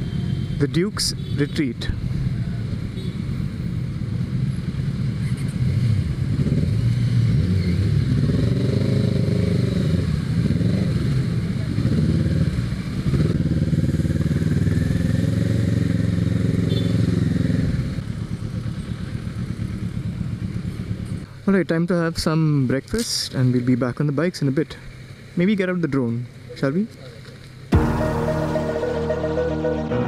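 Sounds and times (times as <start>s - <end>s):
motorcycle engine revving: 4.4s - 21.2s.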